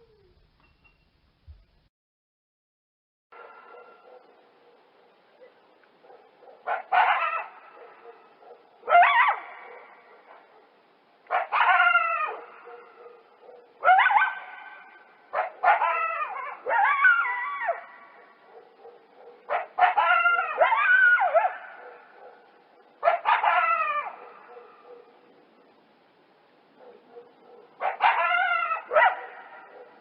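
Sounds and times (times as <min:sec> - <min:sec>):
faint steady hum: 0:03.4 - 0:30.0
animal yelping: 0:11.3 - 0:13.0, 0:23.1 - 0:25.0, 0:27.8 - 0:29.9.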